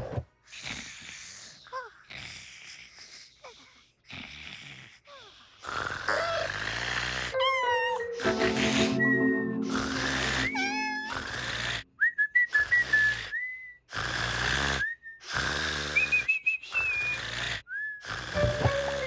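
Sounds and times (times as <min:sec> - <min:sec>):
cartoon cat snoring: 0:04.0 - 0:07.4, 0:13.9 - 0:16.2, 0:17.0 - 0:19.0
light music: 0:07.4 - 0:11.8, 0:18.4 - 0:19.0
whistle-like pitch slides: 0:07.4 - 0:13.1.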